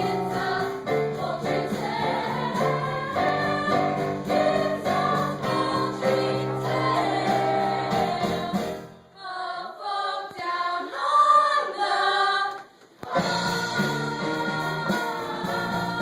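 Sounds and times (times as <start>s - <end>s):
band accompaniment: 0.0s - 9.0s, 13.1s - 16.0s.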